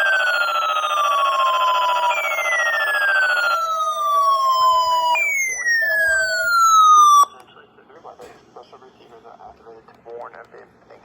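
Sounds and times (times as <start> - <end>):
buzzy alarm tone: 0.0 - 7.3
falling siren sweep: 0.0 - 7.4.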